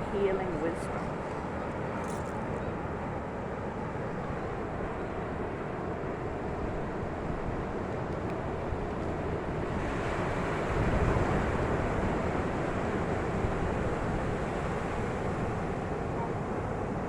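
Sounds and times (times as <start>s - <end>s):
ocean surf washing ashore: 2.7s - 17.0s
wind noise on microphone: 8.4s - 16.3s.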